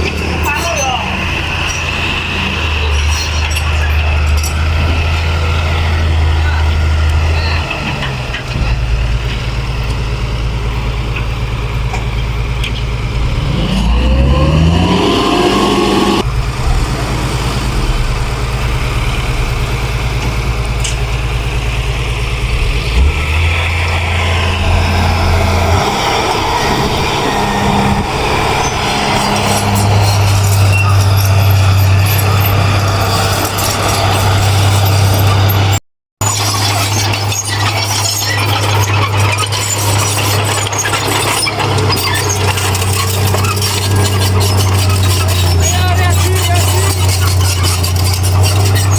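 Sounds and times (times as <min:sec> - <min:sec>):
engine revving with rising whine: 0:00.0 - 0:37.4
heavy diesel engines running: 0:00.0 - 0:48.9.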